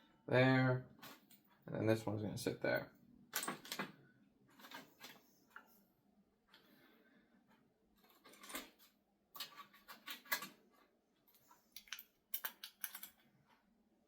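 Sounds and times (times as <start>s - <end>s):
metal parts clinking and scraping: 3.3s - 3.9s, 4.5s - 5.6s, 8.0s - 10.9s.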